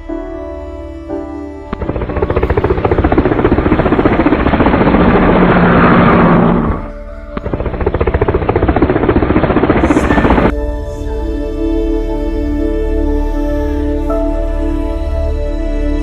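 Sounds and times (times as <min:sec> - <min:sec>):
background music: 0:00.0 - 0:16.0
helicopter rotor blades chopping: 0:01.7 - 0:10.5.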